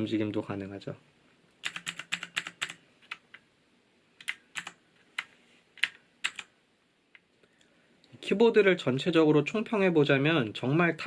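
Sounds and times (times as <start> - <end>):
mechanical keyboard clicks: 1.6 - 3.3, 4.2 - 6.5.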